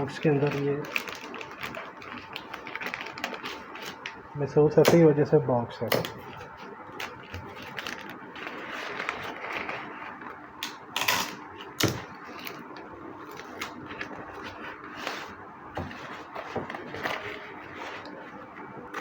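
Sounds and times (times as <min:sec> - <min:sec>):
cardboard rustling: 0:00.0 - 0:04.1, 0:06.4 - 0:10.4, 0:12.0 - 0:19.0.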